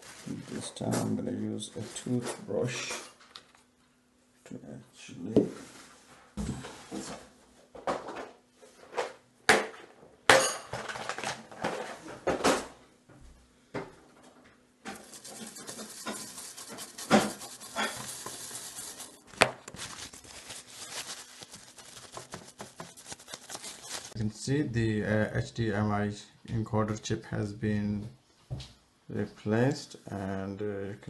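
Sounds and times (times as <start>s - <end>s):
steady rough hiss: 15.0s - 19.4s.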